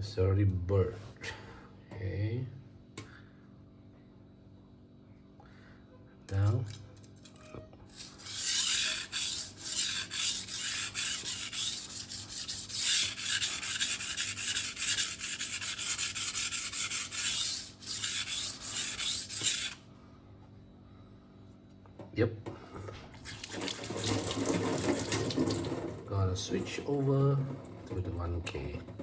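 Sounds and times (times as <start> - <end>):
knife scraping on whetstone: 7.3 - 19.8.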